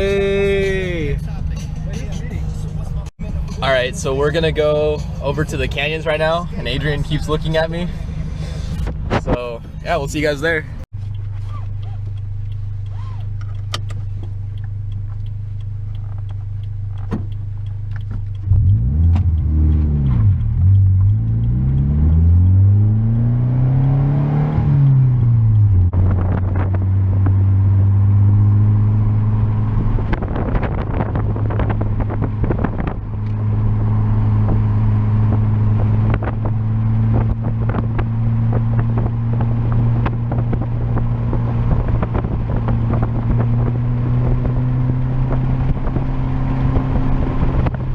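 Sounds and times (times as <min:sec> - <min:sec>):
car engine idling: 0:00.0 - 0:22.2
car cruising drone: 0:00.0 - 0:47.9
car accelerating through gears: 0:18.4 - 0:47.7.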